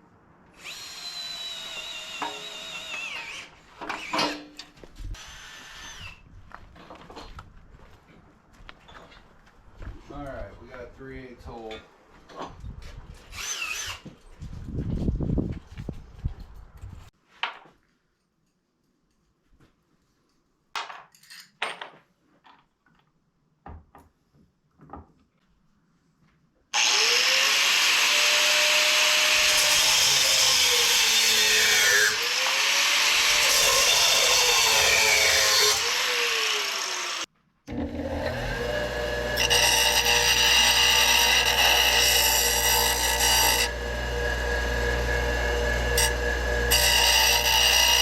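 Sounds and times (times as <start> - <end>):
power tool working metal: 0.6 - 4.4, 26.8 - 48.0.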